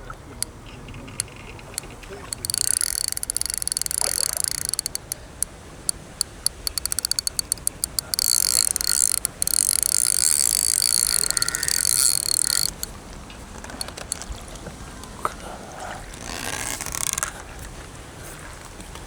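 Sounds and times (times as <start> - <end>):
fishing reel clutch clicking: 1.2 - 12.9, 13.7 - 14.3, 16.2 - 17.2.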